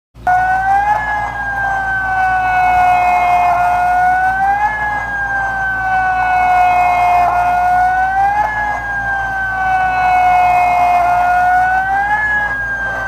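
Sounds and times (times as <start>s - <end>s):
siren-like wailing alarm: 0.2s - 13.0s.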